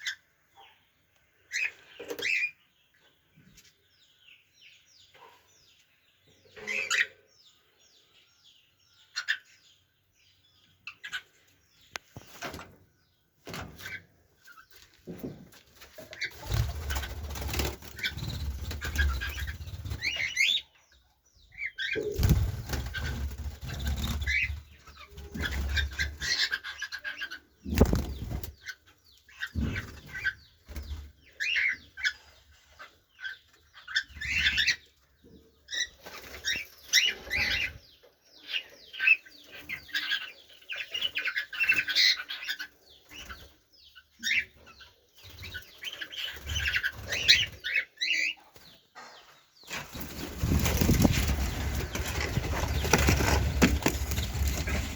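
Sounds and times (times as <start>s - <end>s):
birds chirping: 0.0s - 54.9s
birds fluttering wings: 15.7s - 20.3s, 22.1s - 26.2s, 27.7s - 28.6s, 49.7s - 54.9s.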